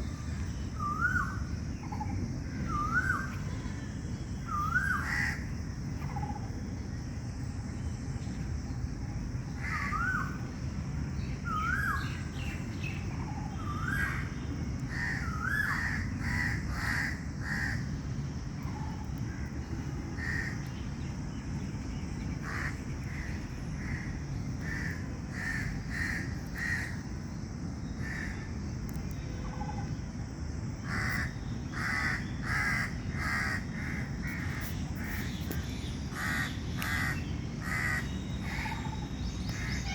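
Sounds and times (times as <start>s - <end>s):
steady background noise: 0.0s - 39.9s
bird whistled calls: 2.6s - 3.5s, 11.5s - 12.2s
crows cawing: 4.8s - 5.4s, 14.9s - 17.8s, 20.2s - 20.6s, 22.4s - 27.0s, 30.9s - 34.6s, 36.2s - 38.8s.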